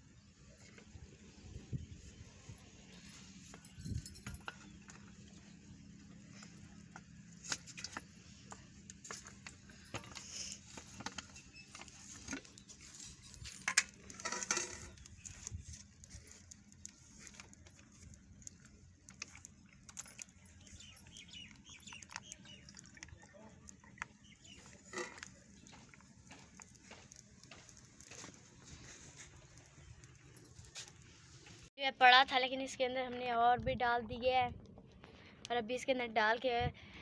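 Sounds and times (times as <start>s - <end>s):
metal pots and utensils clinking: 12.8s - 15.1s, 24.6s - 26.6s
metal pots clattering: 13.4s - 15.1s, 24.6s - 26.6s.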